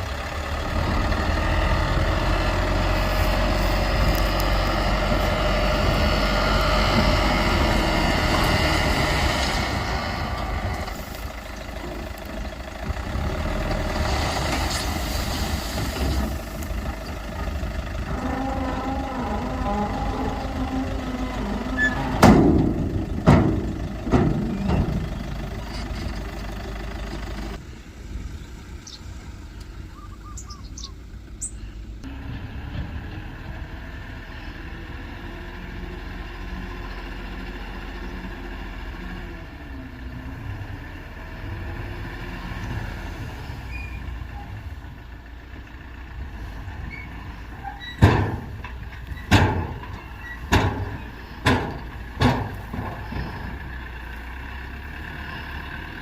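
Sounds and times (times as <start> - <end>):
bulldozer diesel engine running: 0.0 - 56.0
loud metal clanks: 21.4 - 25.2, 47.9 - 53.5.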